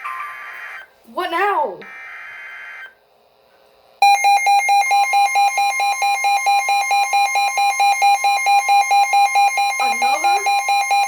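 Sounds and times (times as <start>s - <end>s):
rapidly pulsing alarm beep: 4.0s - 11.0s
steady high alert tone: 4.0s - 11.0s.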